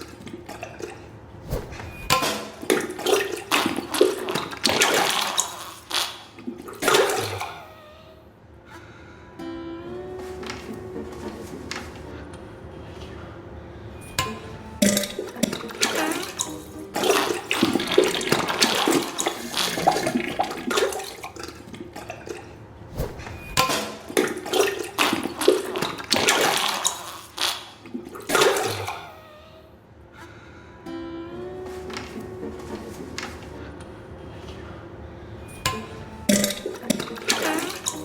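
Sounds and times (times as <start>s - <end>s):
wet spluttering diarrhea bursts: 1.9s - 8.1s, 14.3s - 22.4s, 23.2s - 29.3s, 35.8s - 38.0s.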